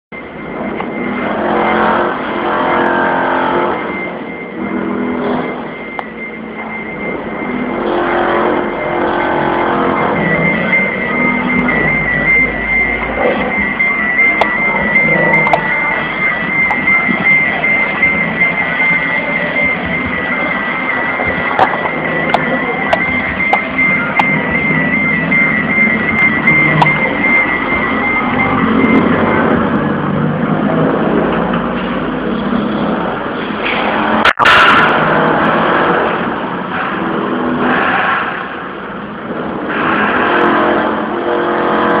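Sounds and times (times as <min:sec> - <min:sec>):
steady high tone: 0:00.1 - 0:42.0
distorted bass-heavy rap music: 0:07.0 - 0:31.2.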